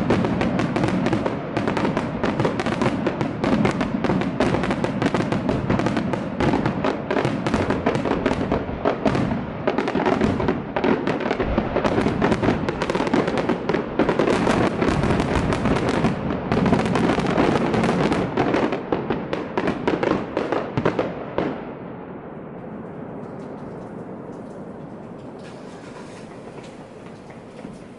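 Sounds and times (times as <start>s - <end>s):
fireworks bursts and crackles: 0.0s - 27.9s
steady background noise: 21.7s - 27.9s.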